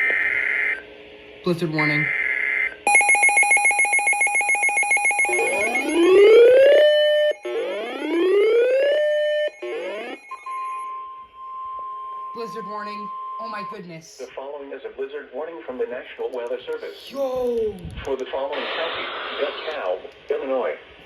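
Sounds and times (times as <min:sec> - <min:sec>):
fast-pulsing electronic beep: 0:02.0 - 0:14.0
steady electronic tone: 0:05.1 - 0:14.0
rising siren-like sweeps: 0:05.3 - 0:13.8.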